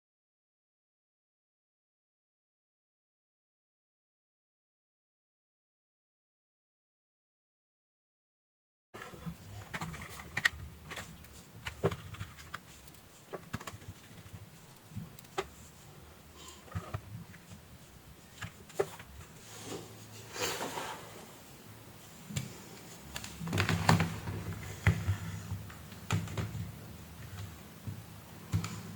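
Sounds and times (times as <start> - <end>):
rustling: 9.0 - 28.9.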